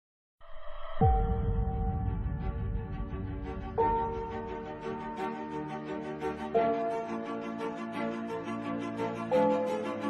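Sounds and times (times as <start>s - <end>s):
low rumble: 0.4s - 5.2s
soft music swell: 0.5s - 10.0s.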